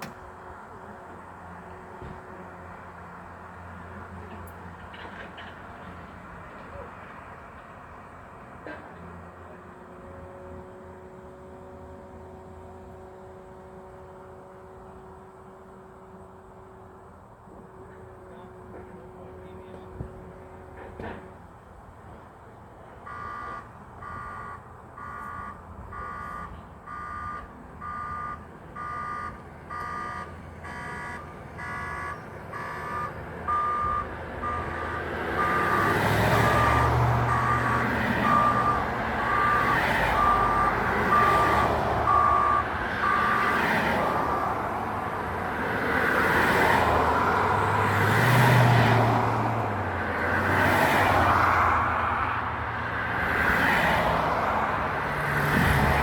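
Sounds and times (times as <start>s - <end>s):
heavy engine noise: 0.0s - 56.0s
road noise: 0.0s - 56.0s
reversing alarm beeping: 23.1s - 43.7s.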